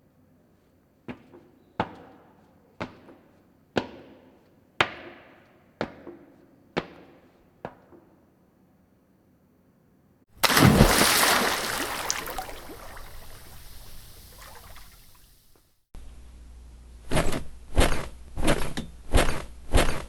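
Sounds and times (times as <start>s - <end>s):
person landing with a thud: 10.4s - 15.1s.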